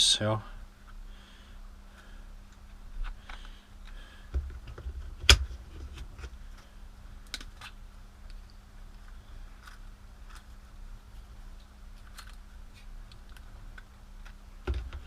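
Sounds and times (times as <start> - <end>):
plastic parts clicking: 12.0 - 12.4.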